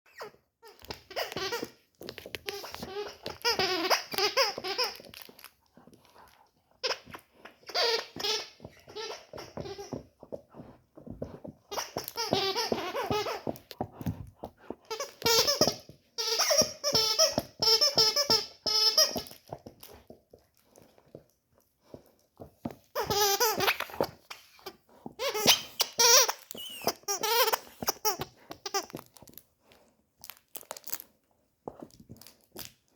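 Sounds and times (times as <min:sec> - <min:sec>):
squeaky toy squeaking: 0:00.1 - 0:05.3, 0:06.8 - 0:10.0, 0:11.7 - 0:13.6, 0:14.9 - 0:19.5, 0:22.9 - 0:29.0.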